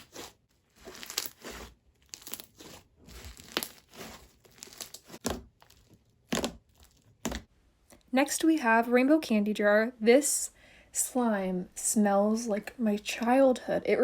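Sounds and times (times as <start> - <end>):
slime squeezed and crackling: 0.0 - 7.3.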